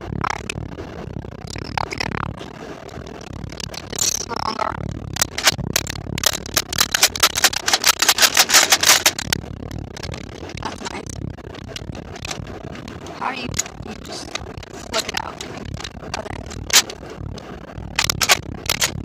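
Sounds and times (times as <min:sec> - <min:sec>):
packaging scraping and rustling: 0:05.2 - 0:09.3, 0:13.6 - 0:17.0, 0:18.0 - 0:19.0
toy blaster rattling clicks: 0:05.2 - 0:09.3, 0:13.6 - 0:16.9, 0:18.0 - 0:19.0.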